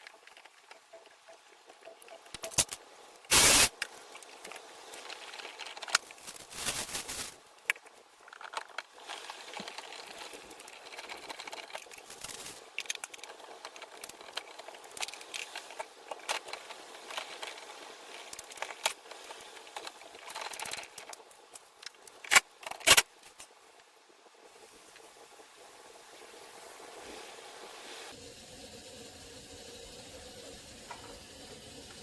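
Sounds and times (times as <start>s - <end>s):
hands rustling and handling things: 2.1s - 23.9s.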